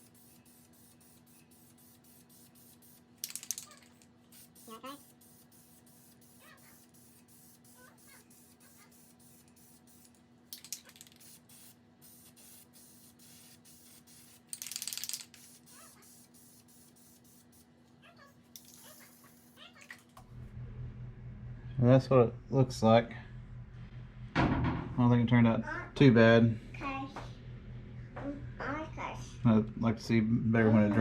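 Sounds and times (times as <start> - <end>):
spray paint hissing: 0.0 - 17.7.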